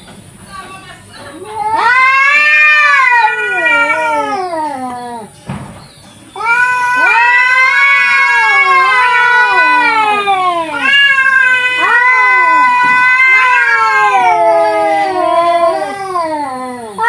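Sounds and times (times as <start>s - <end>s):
cats yowling: 1.4s - 5.4s, 6.3s - 17.0s.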